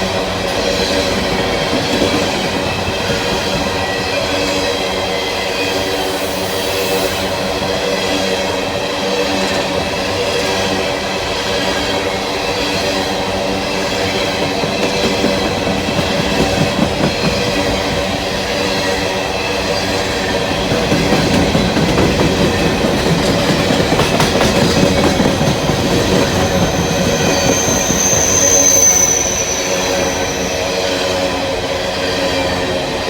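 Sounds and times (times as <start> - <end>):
train wheels clattering over rails: 0.0 - 5.9, 7.6 - 33.0
high-pitched wheel squeal: 25.2 - 31.4.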